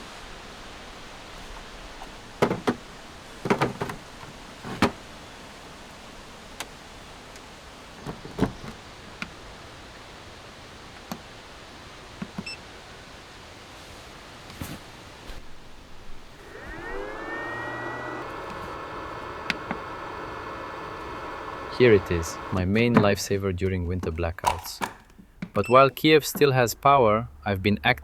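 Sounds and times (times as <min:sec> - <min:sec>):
steady background hiss: 0:00.0 - 0:28.0
sharp knocks and clatters: 0:02.4 - 0:05.0.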